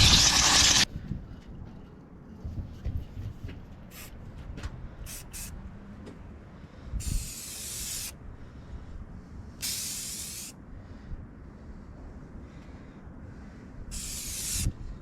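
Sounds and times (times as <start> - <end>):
spray hissing: 0.0 - 0.9, 7.0 - 8.2, 9.6 - 10.5, 13.9 - 14.7.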